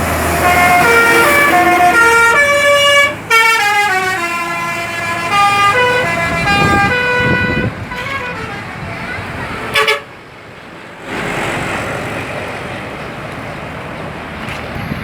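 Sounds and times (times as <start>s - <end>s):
musical bus air horn: 0.1s - 10.2s.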